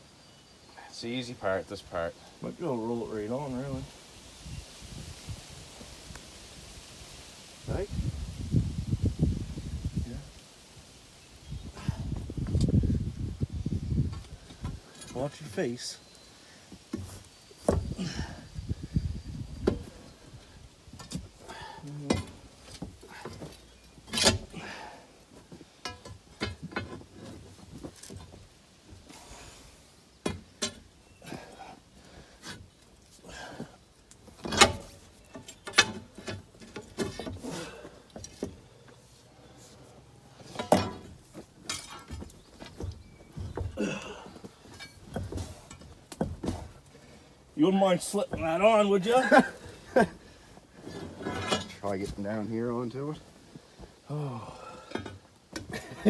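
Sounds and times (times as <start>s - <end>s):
pry bars clanking on steel track: 34.5s - 36.4s.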